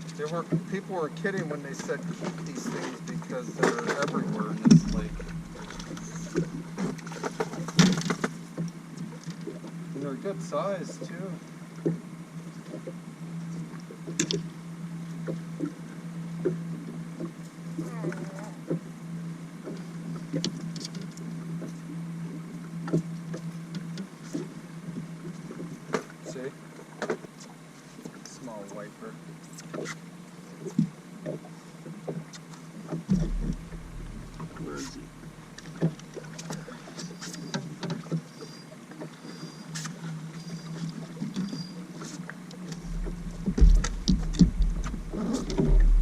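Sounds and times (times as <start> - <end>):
steady low hum: 4.4 - 7.0, 33.0 - 36.8, 42.7 - 46.0
sharp clicks and knocks: 33.1 - 35.9, 42.7 - 46.0.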